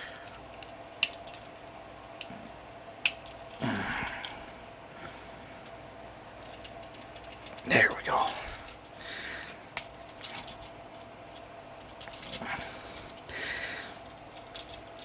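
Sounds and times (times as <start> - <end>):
plastic pieces clicking: 0.2 - 2.3, 3.0 - 3.7, 6.3 - 12.5, 14.3 - 15.0.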